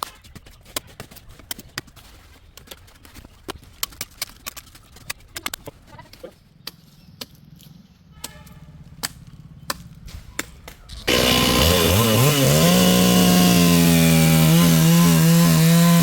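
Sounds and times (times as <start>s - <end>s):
chainsaw idling: 11.1s - 16.0s.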